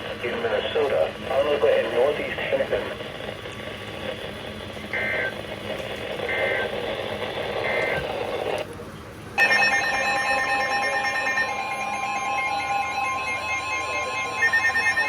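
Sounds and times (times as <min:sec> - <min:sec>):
broadcast hiss: 0:00.0 - 0:08.7.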